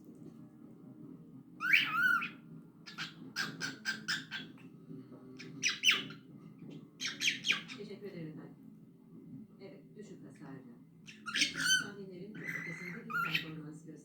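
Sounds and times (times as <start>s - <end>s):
cockatiel whistling and chirping: 1.6s - 4.5s.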